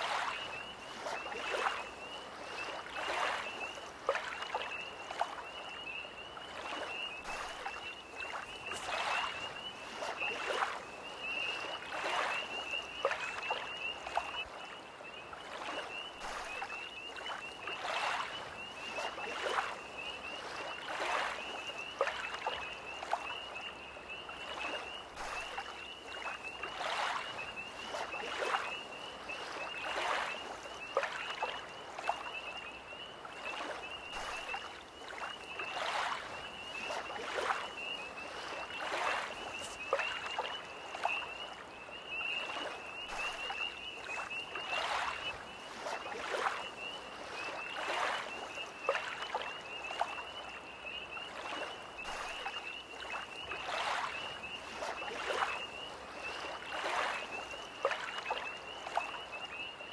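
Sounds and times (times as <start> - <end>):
lake waves lapping at shore: 0.0 - 59.9
tree frogs trilling: 0.0 - 59.9.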